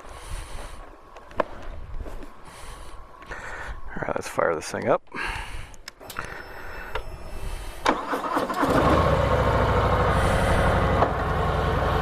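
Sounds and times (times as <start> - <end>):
motorcycle engine idling: 8.6 - 12.0.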